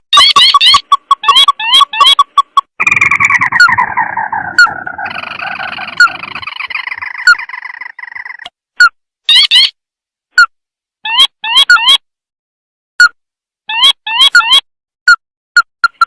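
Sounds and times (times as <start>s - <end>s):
bird churring trill: 0.1s - 8.5s
bird call sharp rising notes: 2.8s - 8.4s.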